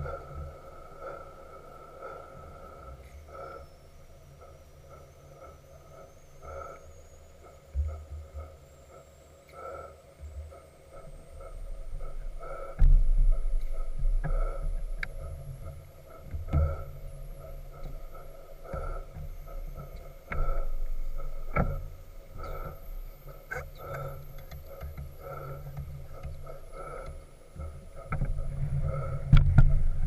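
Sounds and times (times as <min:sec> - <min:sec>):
steam machinery running: 0:00.0 - 0:30.0
low rumbling thumps: 0:11.6 - 0:30.0.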